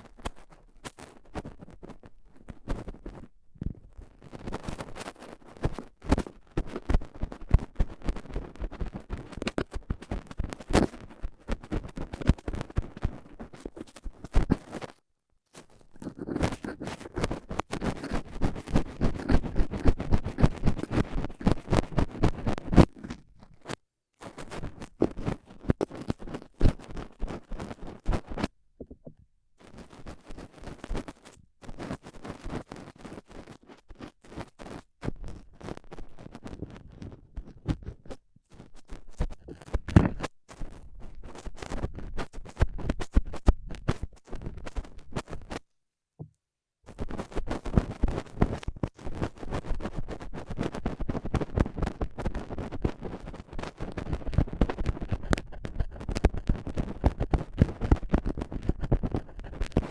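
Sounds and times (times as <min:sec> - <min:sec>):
metal tool scraping microphone: 0:16.0 - 0:23.2.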